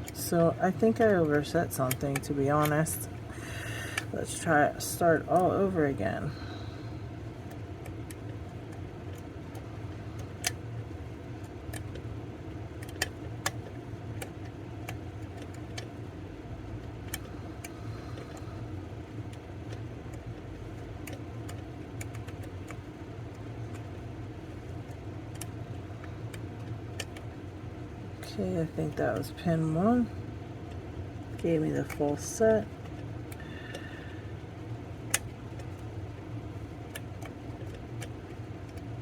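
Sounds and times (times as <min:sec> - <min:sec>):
low background hum: 0:00.0 - 0:39.0.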